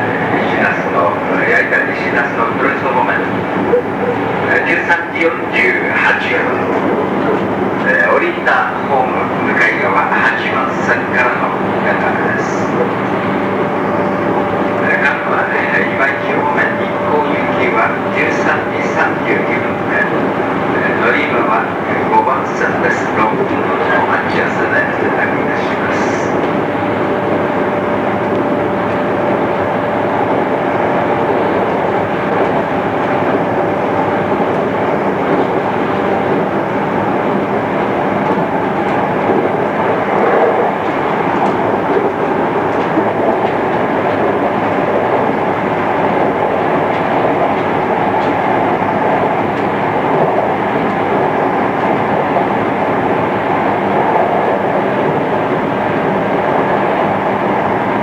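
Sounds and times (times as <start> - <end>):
train wheels rumbling on rail: 0.0 - 58.0.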